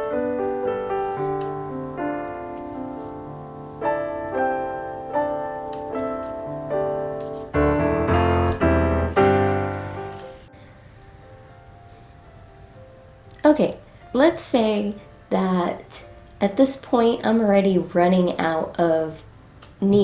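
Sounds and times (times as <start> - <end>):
piano music: 0.0 - 16.4.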